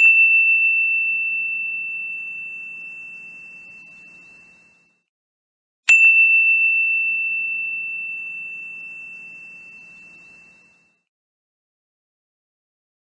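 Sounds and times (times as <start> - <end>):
high phone chime: 0.0 - 5.0, 5.9 - 11.0.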